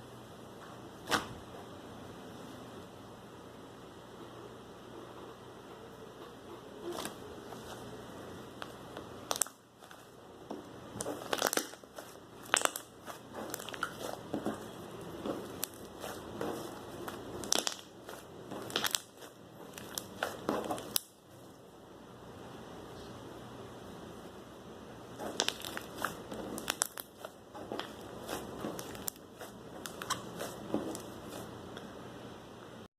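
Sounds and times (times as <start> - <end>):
slime popping and crackling: 8.6 - 10.1, 10.9 - 21.2, 25.2 - 31.5.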